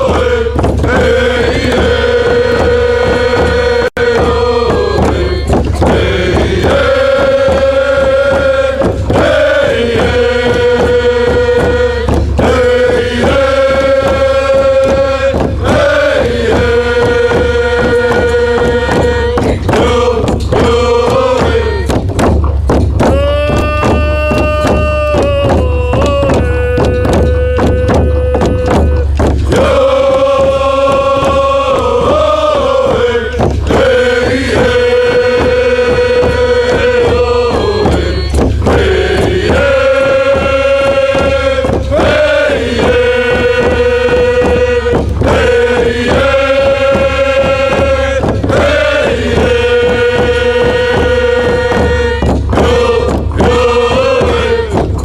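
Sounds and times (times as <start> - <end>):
bass: 0.0 - 55.0
steady drum beat: 0.0 - 55.0
person chanting long notes: 23.1 - 32.3, 33.9 - 42.1.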